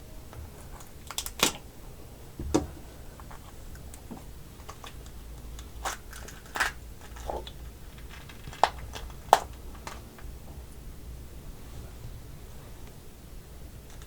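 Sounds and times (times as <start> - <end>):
crab shell crunching: 3.2 - 10.3.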